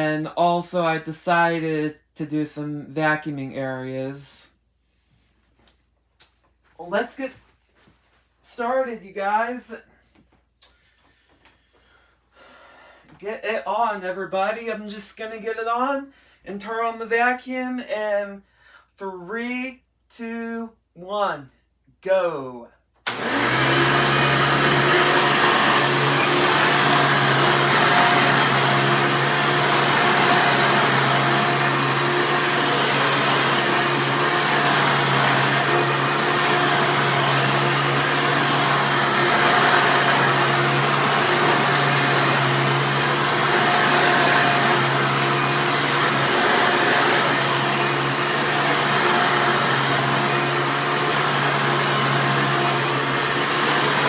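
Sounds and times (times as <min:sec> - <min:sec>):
vacuum cleaner running: 0:23.1 - 0:54.0.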